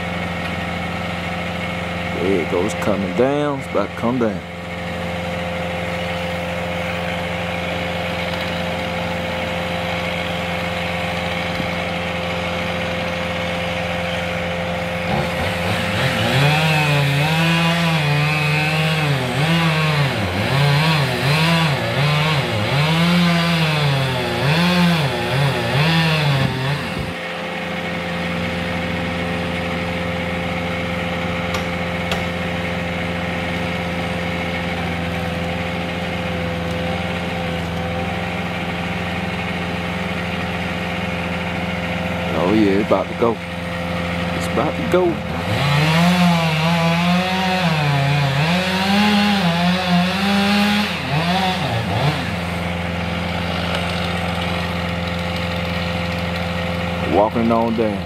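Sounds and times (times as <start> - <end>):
chainsaw cutting tree trunk: 0.0 - 58.0
engine hum: 0.0 - 58.0.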